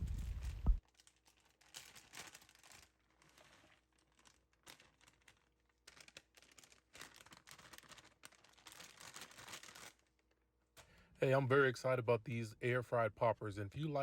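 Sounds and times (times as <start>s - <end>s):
crinkling and rustling handling noises: 0.0s - 11.2s.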